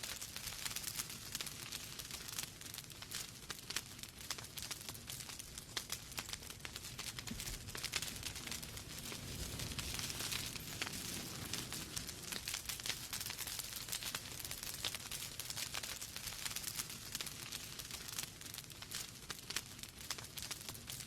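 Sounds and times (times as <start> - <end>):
fire crackling and popping: 0.0 - 21.0
fire hissing: 5.8 - 21.0.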